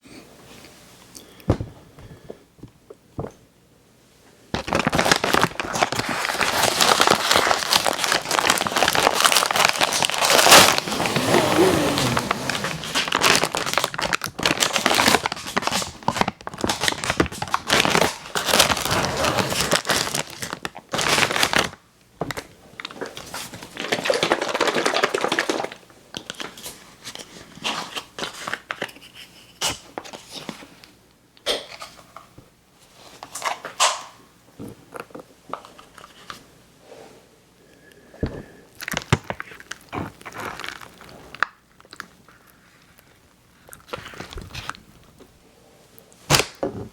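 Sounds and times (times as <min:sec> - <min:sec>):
plastic packaging crinkling: 0:04.6 - 0:28.9, 0:38.8 - 0:45.2.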